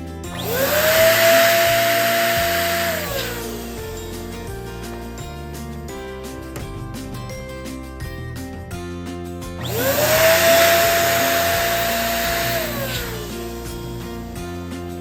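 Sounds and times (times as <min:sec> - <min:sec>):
background music: 0:00.0 - 0:15.0
electric balloon pump whining: 0:00.3 - 0:05.2, 0:09.6 - 0:15.0.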